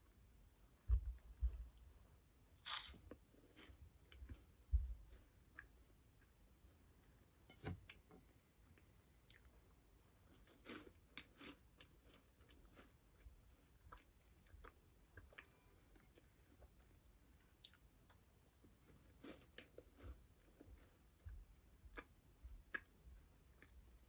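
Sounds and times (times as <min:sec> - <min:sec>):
chewing crunchy snacks: 0:02.6 - 0:04.4, 0:10.3 - 0:23.8.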